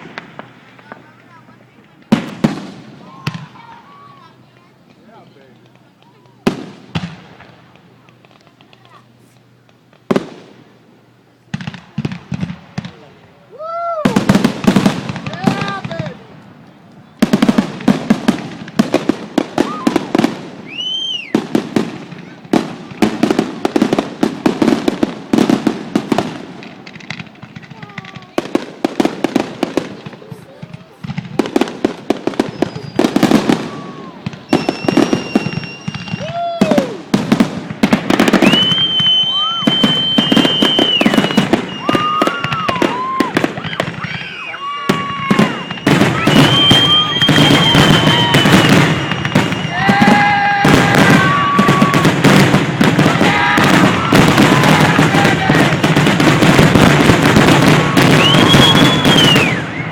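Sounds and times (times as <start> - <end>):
fireworks bangs and crackles: 0.0 - 59.9
firework whistle: 19.5 - 21.5, 32.3 - 37.1, 38.1 - 59.9.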